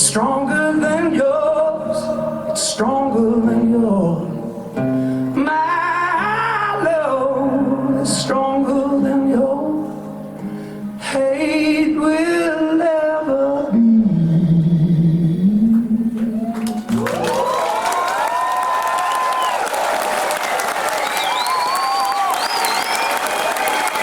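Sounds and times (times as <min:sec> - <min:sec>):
man singing: 0:00.0 - 0:04.6, 0:05.3 - 0:10.1, 0:11.0 - 0:16.4.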